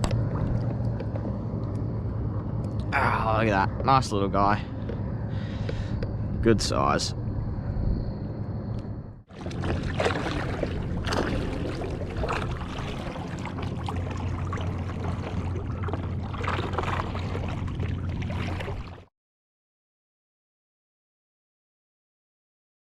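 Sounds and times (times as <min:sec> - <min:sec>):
steady low hum: 0:00.0 - 0:19.1
water sloshing around a kayak: 0:09.3 - 0:19.1
water splashes: 0:09.3 - 0:19.1.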